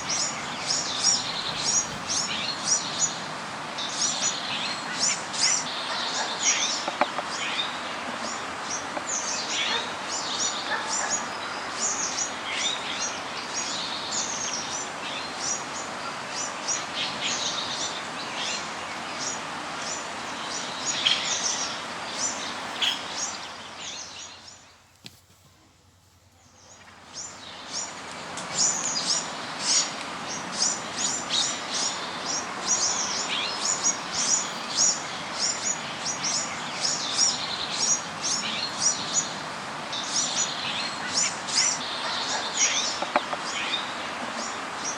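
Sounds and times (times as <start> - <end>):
small birds chirping: 0.0 - 3.2, 17.0 - 25.7
steady background hiss: 0.0 - 44.9.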